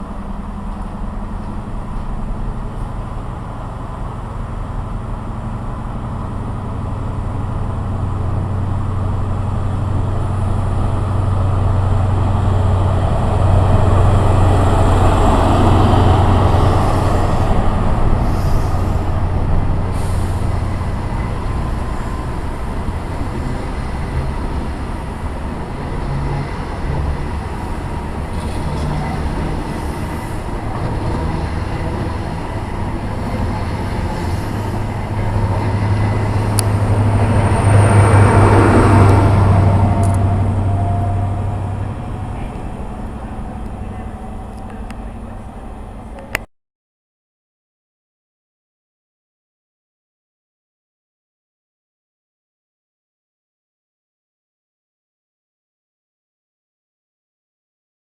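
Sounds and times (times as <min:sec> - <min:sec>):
train passing: 0:00.0 - 0:46.4.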